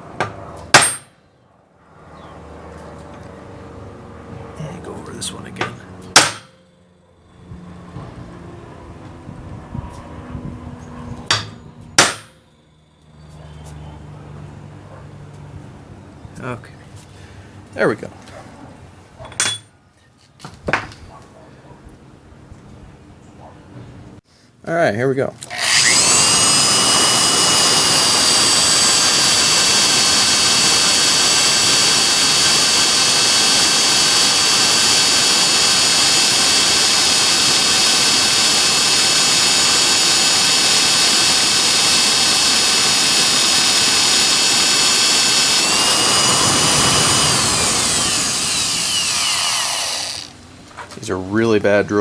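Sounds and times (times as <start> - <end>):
electric drill boring steel: 25.4 - 50.5.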